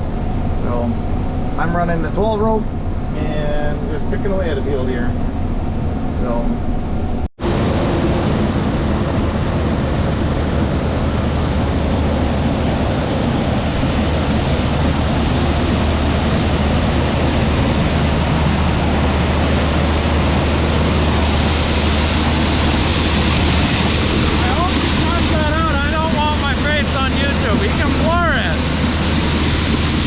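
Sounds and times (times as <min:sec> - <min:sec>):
combine harvester running: 0:07.0 - 0:30.0.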